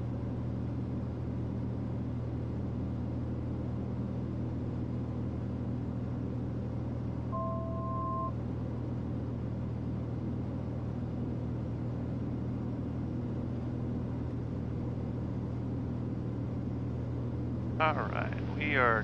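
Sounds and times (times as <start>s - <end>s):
propeller plane engine droning: 0.0s - 19.0s
two-pitch electronic alert tone: 7.4s - 8.3s.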